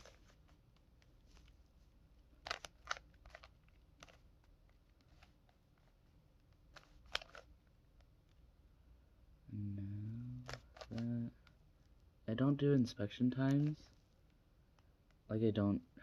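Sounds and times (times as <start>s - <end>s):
puzzle cube plastic clicks: 2.4s - 5.4s, 6.4s - 8.1s, 10.4s - 11.6s.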